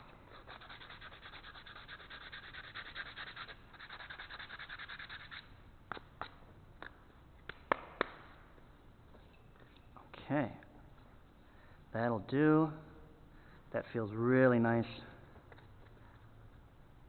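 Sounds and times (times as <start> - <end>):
sandpaper rubbing on wood: 0.3 - 6.4.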